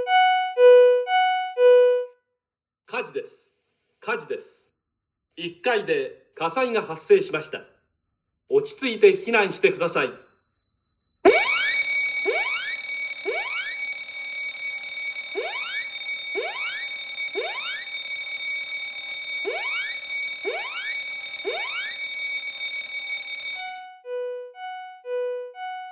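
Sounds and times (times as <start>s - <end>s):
fire alarm ringing with whoops: 11.2s - 23.9s.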